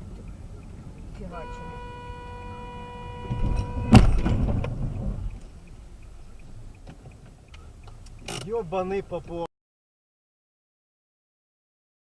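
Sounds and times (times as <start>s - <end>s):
car horn sounding: 1.2s - 5.4s
collision crunch: 3.1s - 7.1s.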